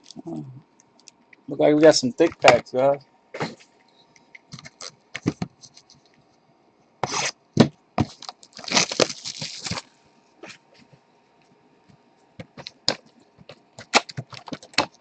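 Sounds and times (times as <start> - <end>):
card pack wrappers crinkling: 8.0 - 9.9
wrapper tearing rustle: 8.1 - 9.9.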